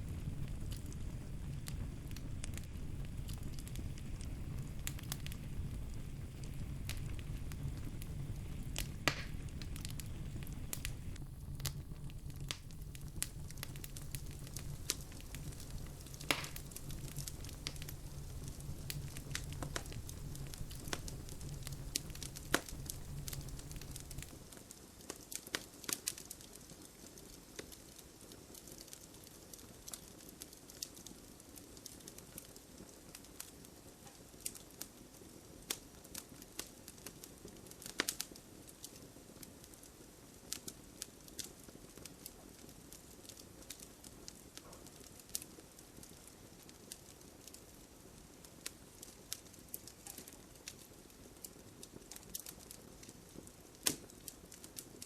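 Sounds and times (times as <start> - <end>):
fire popping: 0.0 - 55.0
wood fire crackling: 0.0 - 55.0.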